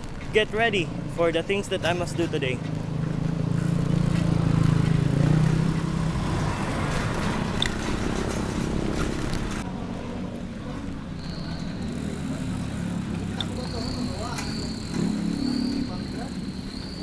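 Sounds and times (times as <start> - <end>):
road traffic noise: 0.0 - 17.0
passing vehicle engine drone: 0.9 - 17.0
high insect trill: 13.4 - 17.0.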